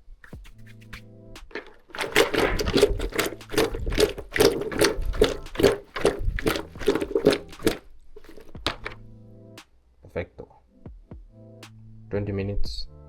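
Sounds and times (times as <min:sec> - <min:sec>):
dried leaves rattling in container: 0:01.5 - 0:09.0.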